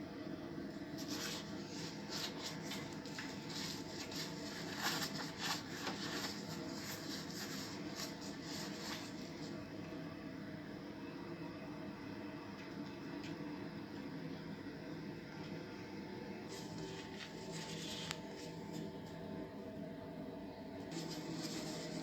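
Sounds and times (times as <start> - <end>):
rubbing and scratching: 1.0 - 9.6, 20.9 - 22.0.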